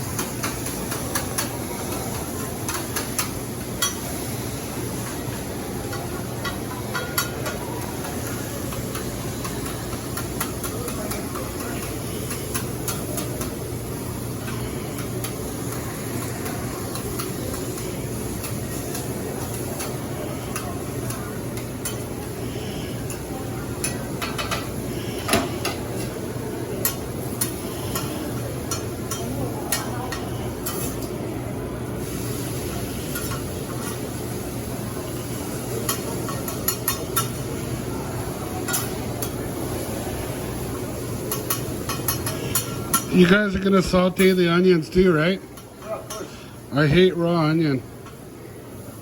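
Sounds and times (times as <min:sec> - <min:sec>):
meat sizzling on a griddle: 0:00.0 - 0:43.1
metal spatula clicking and scraping: 0:00.2 - 0:04.0, 0:06.0 - 0:13.5, 0:14.4 - 0:22.1, 0:28.7 - 0:31.1, 0:35.9 - 0:37.4, 0:38.7 - 0:39.4, 0:41.3 - 0:43.1.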